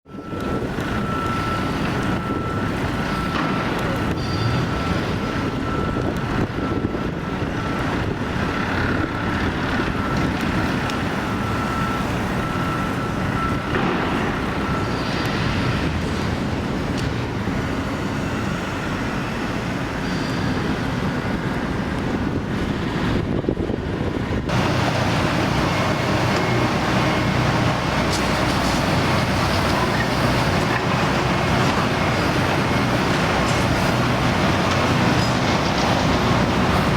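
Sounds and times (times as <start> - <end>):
city traffic: 0.0 - 36.9
construction machinery noise: 0.1 - 36.9.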